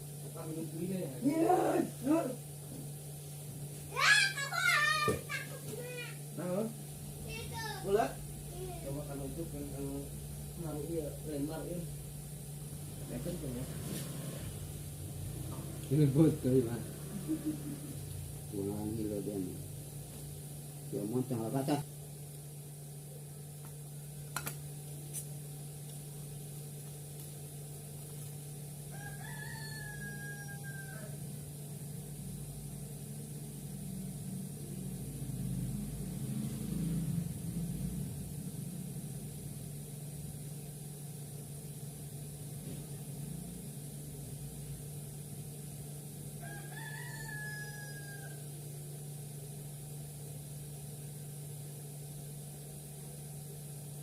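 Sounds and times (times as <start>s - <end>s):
steady low hum: 0.0s - 46.6s, 47.2s - 54.0s
rooster crowing: 28.8s - 31.6s, 46.3s - 48.7s.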